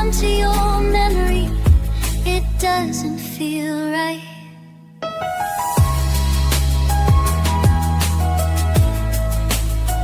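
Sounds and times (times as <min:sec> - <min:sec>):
deep bass: 0:00.0 - 0:02.7, 0:05.8 - 0:10.0.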